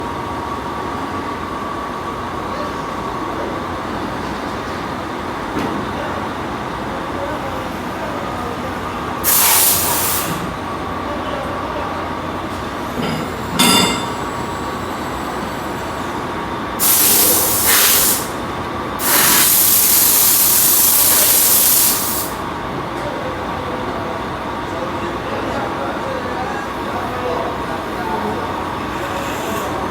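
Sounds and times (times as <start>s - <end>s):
compressed air hiss: 9.2s - 10.5s, 16.8s - 18.4s, 19.0s - 22.4s
metallic clang: 13.0s - 14.2s.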